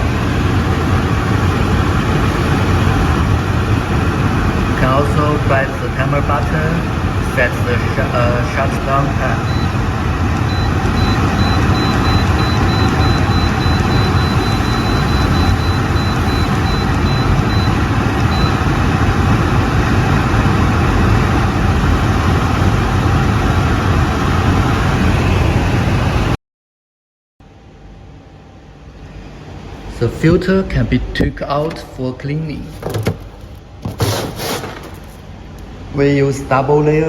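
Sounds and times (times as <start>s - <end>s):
dehumidifier fan rushing: 0.0s - 26.4s, 27.5s - 37.0s
pulsing high tone: 9.2s - 18.8s.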